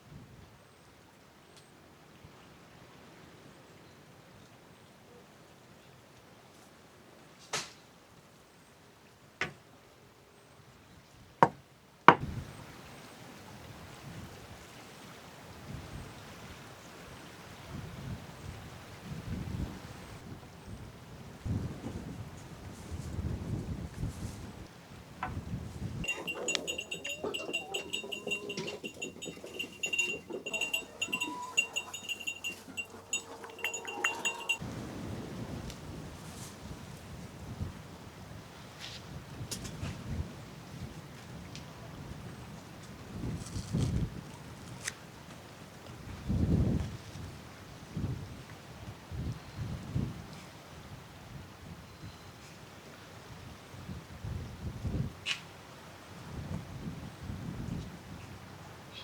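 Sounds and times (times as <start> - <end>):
livestock bells jingling: 26.0 - 34.6.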